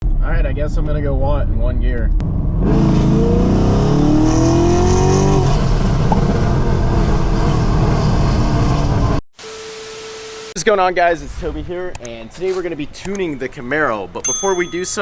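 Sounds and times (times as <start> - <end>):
car engine accelerating hard: 2.2 - 9.2.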